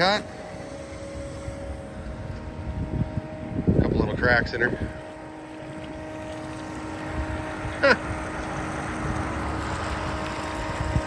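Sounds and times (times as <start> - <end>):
vehicle engine humming: 0.0 - 11.0.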